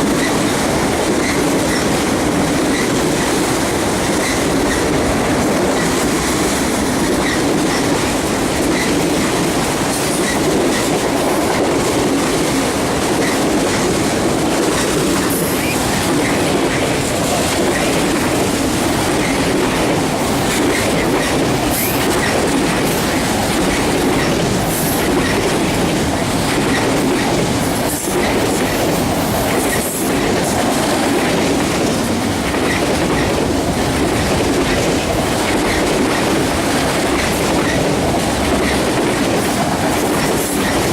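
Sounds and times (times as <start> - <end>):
freight train rumbling past: 0.0 - 40.9
wheels clicking on rails: 0.0 - 40.9.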